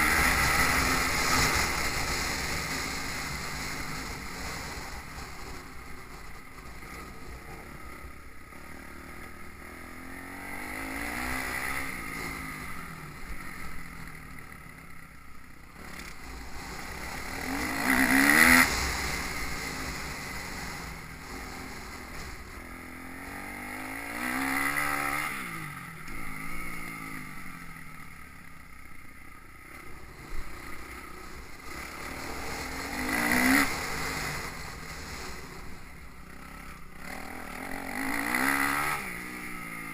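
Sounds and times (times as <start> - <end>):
motocross bike engines revving: 0.0 - 39.9.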